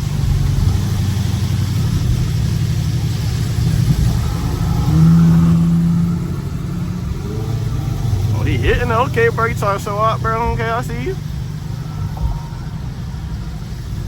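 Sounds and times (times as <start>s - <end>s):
tyre hiss on wet road: 0.0s - 9.4s
car engine droning: 0.0s - 14.0s.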